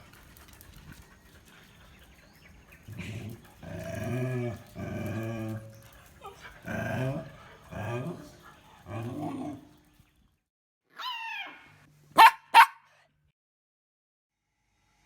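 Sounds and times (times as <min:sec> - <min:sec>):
dog growling: 0:02.9 - 0:09.8.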